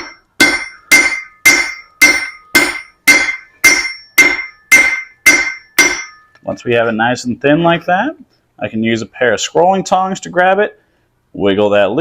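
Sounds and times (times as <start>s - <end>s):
hammer striking hot iron: 0.0s - 6.4s.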